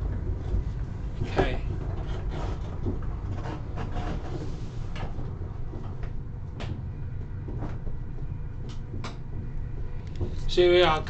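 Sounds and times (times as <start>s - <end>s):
sharp clicks and knocks: 5.0s - 10.4s.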